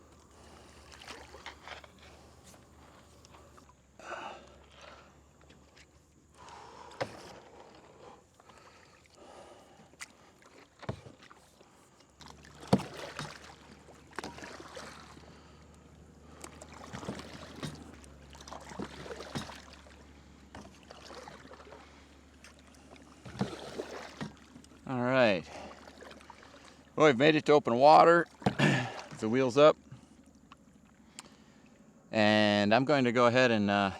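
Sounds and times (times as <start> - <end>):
kayak splashing in water: 0.0 - 32.3
steady low hum: 0.0 - 33.9.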